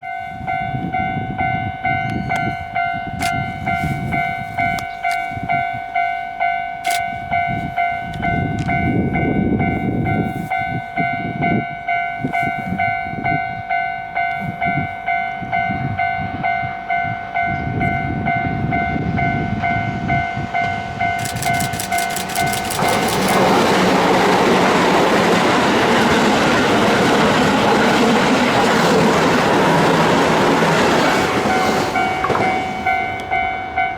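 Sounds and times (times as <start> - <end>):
electric train passing: 0.0 - 33.9
level crossing bell ringing: 21.2 - 23.6, 31.4 - 33.9.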